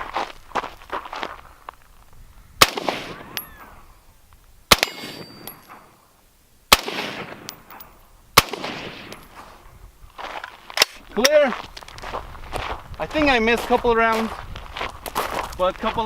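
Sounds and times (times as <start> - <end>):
rifle shots echoing: 2.6 - 3.8, 4.7 - 5.9, 6.7 - 9.3
steel plate ringing: 4.8 - 5.7.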